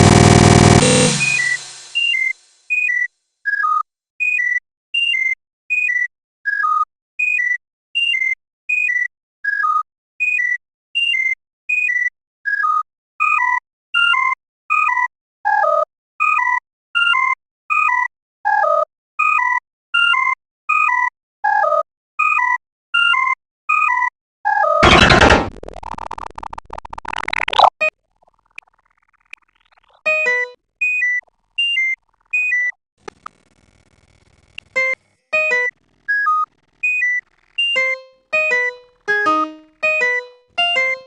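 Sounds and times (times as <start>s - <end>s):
synthesized notification chirp blips: 37.6s - 41.0s.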